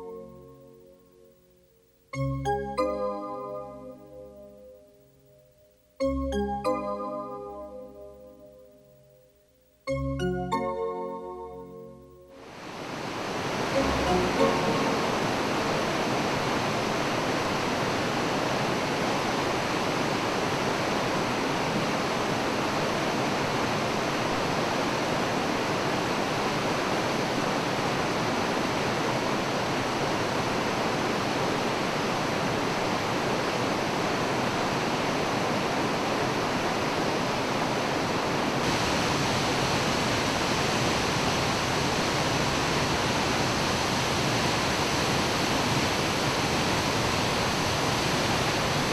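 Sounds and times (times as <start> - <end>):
waterfall rushing: 12.4 - 48.9.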